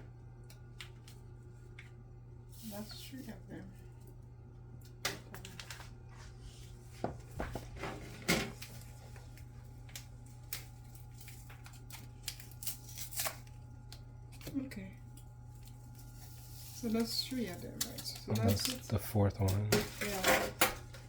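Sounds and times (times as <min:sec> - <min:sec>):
steady low hum: 0:00.0 - 0:21.0
paper packets tearing and rustling: 0:09.9 - 0:13.6, 0:15.6 - 0:20.5.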